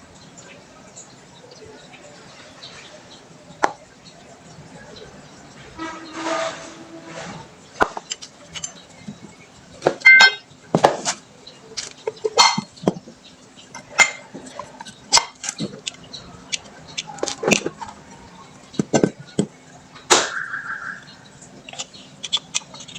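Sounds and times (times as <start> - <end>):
metal tools clinking: 10.0 - 10.4.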